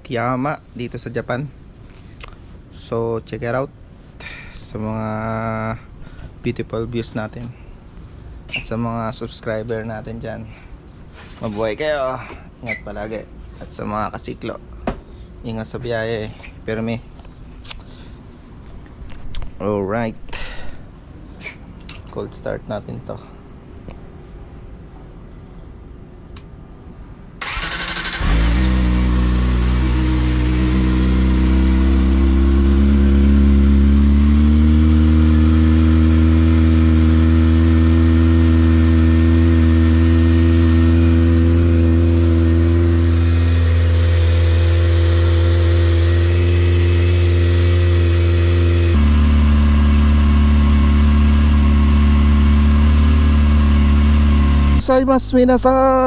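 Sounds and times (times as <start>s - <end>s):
starter motor whir: 27.4s - 34.3s, 48.9s - 54.8s
motorcycle engine idling: 27.4s - 54.8s.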